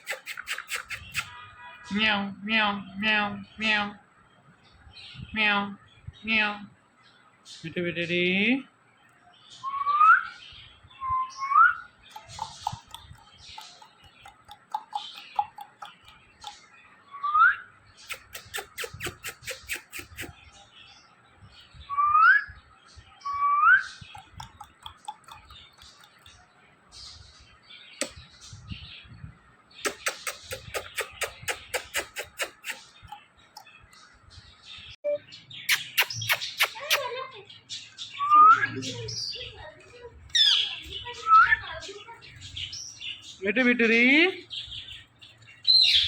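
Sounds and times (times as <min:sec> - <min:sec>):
parrot chattering calls: 0:00.0 - 0:01.3, 0:12.1 - 0:16.6, 0:18.1 - 0:20.4, 0:24.0 - 0:26.2, 0:29.9 - 0:33.3, 0:35.7 - 0:37.2, 0:40.3 - 0:41.6
small bird chirps: 0:00.0 - 0:02.0, 0:09.0 - 0:46.0.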